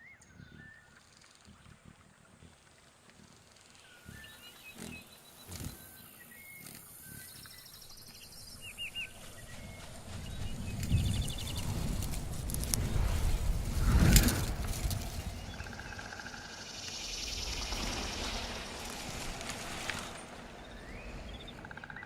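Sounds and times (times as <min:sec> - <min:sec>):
deep rumble: 0:08.3 - 0:21.8.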